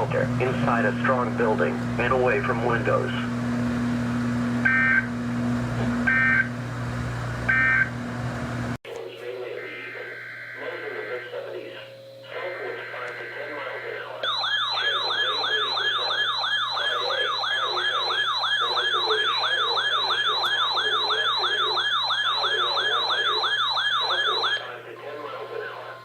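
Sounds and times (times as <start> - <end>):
electronic siren yelping: 4.6 - 5.2, 6.0 - 6.6, 7.5 - 8.0, 9.4 - 26.0.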